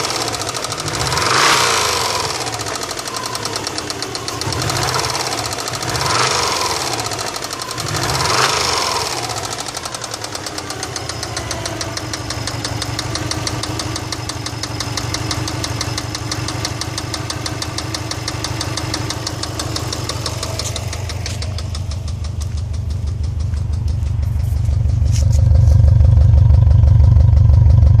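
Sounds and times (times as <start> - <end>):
engine knocking: 0.0 - 28.0
engine revving: 0.0 - 28.0.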